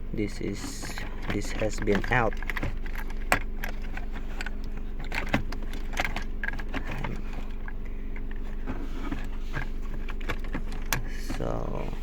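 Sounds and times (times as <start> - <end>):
car engine hum in cabin: 0.0 - 12.0
plastic vent controls clicking: 0.5 - 8.4, 10.0 - 11.6.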